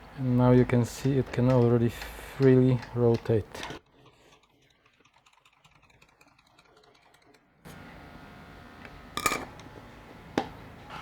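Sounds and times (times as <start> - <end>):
light clicking of small parts: 0.3 - 3.8.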